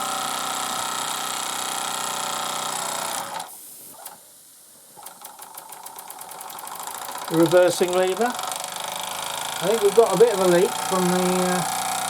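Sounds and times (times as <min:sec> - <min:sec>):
hiss of steam: 0:03.4 - 0:05.2
steam engine rattling: 0:05.0 - 0:12.0.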